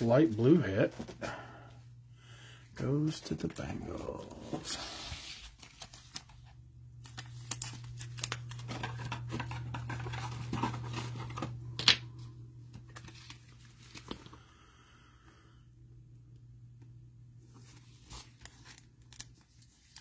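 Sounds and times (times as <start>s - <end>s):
trading cards and packaging rustling: 0.0s - 1.5s, 2.8s - 14.4s, 17.5s - 20.0s
steady low hum: 0.0s - 18.4s.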